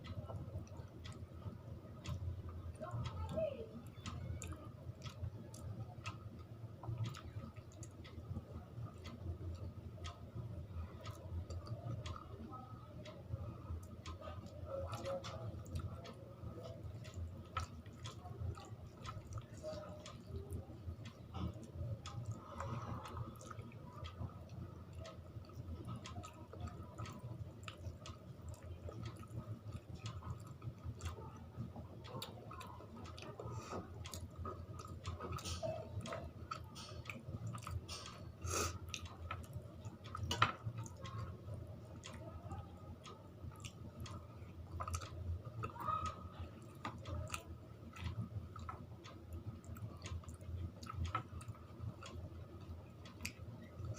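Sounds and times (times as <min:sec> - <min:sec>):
steady low hum: 0:00.0 - 0:53.9
chewing and wet mouth clicks: 0:04.0 - 0:08.2, 0:10.9 - 0:12.3, 0:13.8 - 0:53.9.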